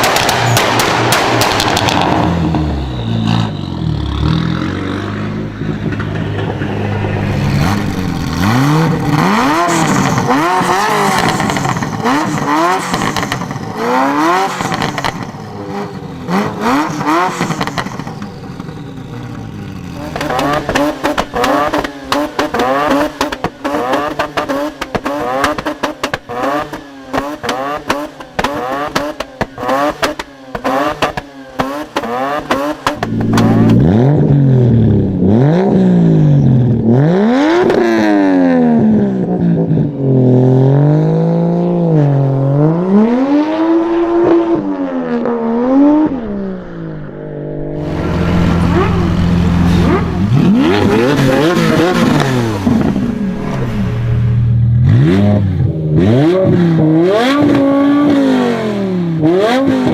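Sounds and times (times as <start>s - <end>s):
exhaust crackles and pops: 0.0s - 2.6s, 27.1s - 35.4s
car engine revving: 0.0s - 59.9s.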